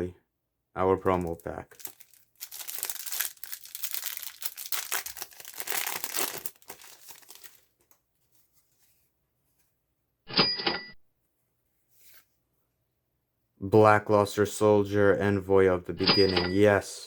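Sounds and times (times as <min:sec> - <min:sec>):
foil wrapper tearing and crinkling: 0:01.2 - 0:07.7
sharp ringing sound: 0:10.3 - 0:11.0, 0:16.0 - 0:16.6.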